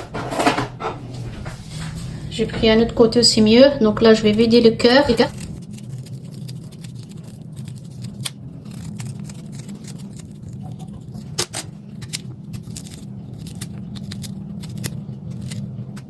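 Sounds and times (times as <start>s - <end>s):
steady low hum: 0.0s - 16.0s
knife cutting and scraping: 4.8s - 15.8s.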